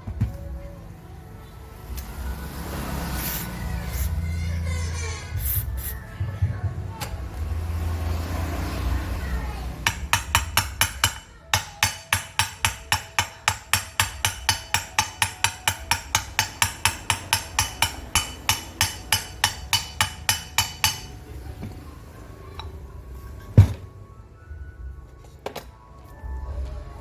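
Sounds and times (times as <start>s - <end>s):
hammer striking metal: 9.8s - 21.3s.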